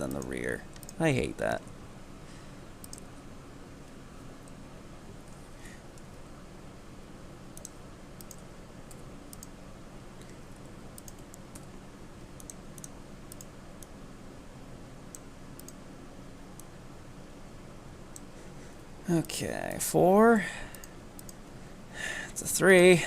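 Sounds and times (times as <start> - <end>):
steady low hum: 0.0 - 23.0
mouse and keyboard clicks: 2.8 - 3.1.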